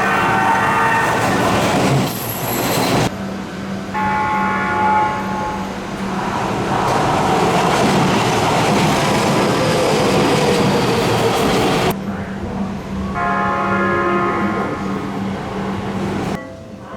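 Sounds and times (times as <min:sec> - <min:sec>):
train rolling and humming: 0:00.0 - 0:16.9
train horn chord: 0:03.8 - 0:05.8, 0:13.1 - 0:15.2.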